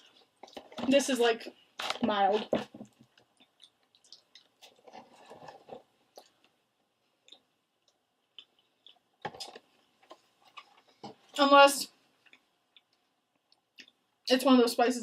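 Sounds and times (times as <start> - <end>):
person chewing food: 2.8 - 11.3, 12.2 - 14.2
wet mouth clicks and smacks: 3.2 - 4.8.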